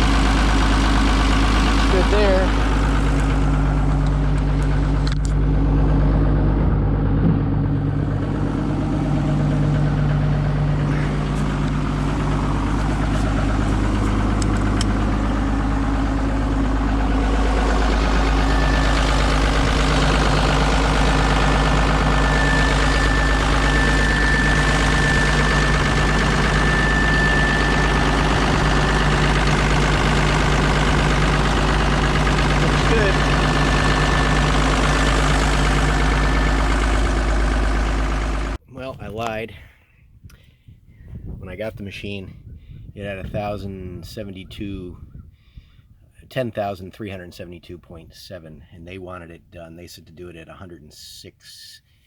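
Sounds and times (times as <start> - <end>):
excavator diesel engine running: 0.0 - 38.6
thin high whine: 21.7 - 29.1.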